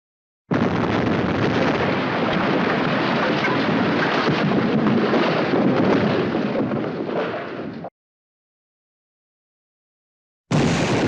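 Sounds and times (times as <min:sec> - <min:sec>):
explosion rumble: 0:00.5 - 0:07.8, 0:10.5 - 0:11.0.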